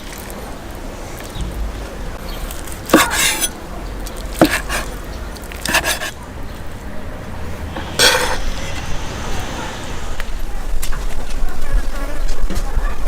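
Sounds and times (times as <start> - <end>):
steady low rumble: 0.0 - 12.1
metal utensil scraping a pot: 1.2 - 6.6, 7.9 - 8.4.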